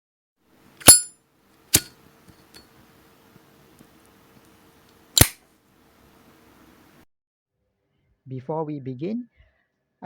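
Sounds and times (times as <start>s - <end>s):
lighter lid clicking: 1.7s - 2.6s, 5.2s - 5.4s.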